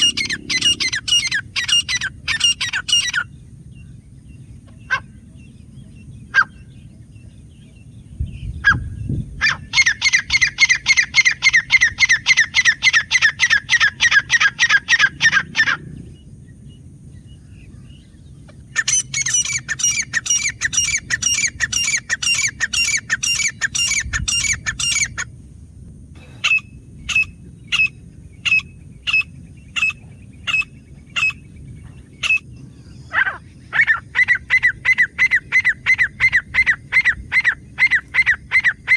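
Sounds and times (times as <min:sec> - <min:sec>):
bird calling harsh repeated notes: 0:00.0 - 0:03.3, 0:18.7 - 0:25.3, 0:26.4 - 0:31.4, 0:32.2 - 0:38.9.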